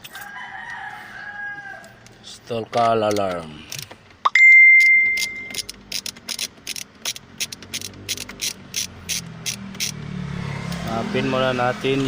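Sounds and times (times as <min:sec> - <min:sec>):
rising electronic beep: 0:04.3 - 0:05.6.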